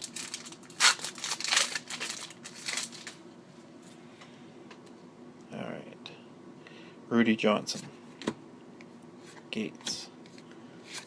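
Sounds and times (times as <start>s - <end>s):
plastic wrapper tearing and crinkling: 0.0s - 3.2s.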